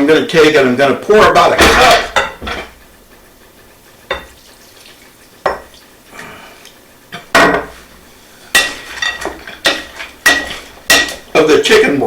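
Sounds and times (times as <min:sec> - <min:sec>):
dishes and utensils clinking: 0:01.2 - 0:02.9, 0:04.1 - 0:06.3, 0:07.1 - 0:11.8.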